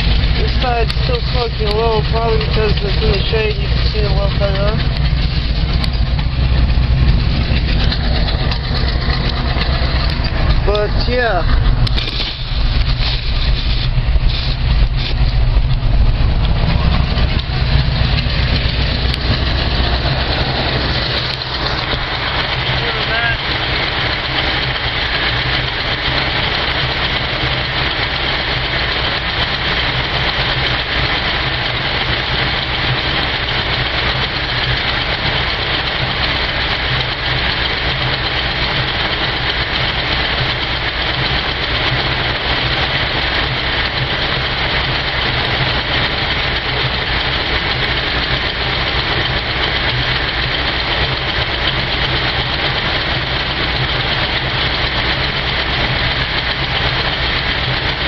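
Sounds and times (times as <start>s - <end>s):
car engine idling: 0.0s - 58.0s.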